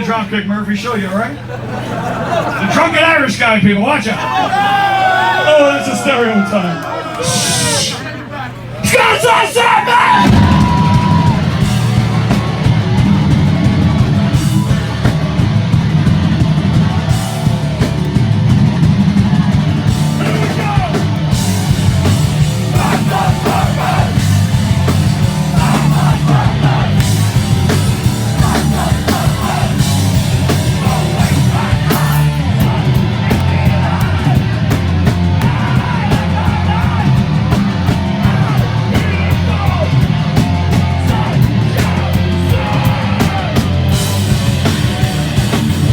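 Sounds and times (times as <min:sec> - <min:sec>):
shouted vocals: 0:04.0 - 0:15.0, 0:19.1 - 0:45.9
distorted guitars: 0:08.8 - 0:45.9
bass guitar: 0:10.0 - 0:45.9
pounding drums: 0:10.2 - 0:45.9.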